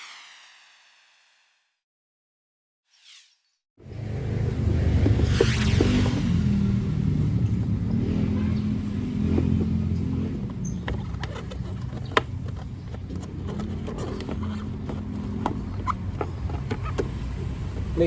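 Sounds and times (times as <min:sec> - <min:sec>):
vehicle engine droning: 0:03.8 - 0:18.0
plastic parts clicking: 0:09.4 - 0:18.0.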